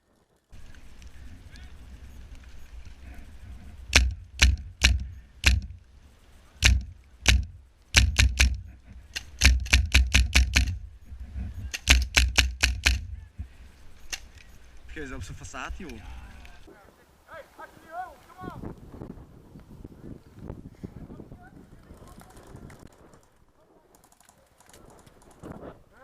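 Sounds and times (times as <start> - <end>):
airsoft rifle shots: 3.9 - 5.8, 6.6 - 10.9, 11.7 - 14.4.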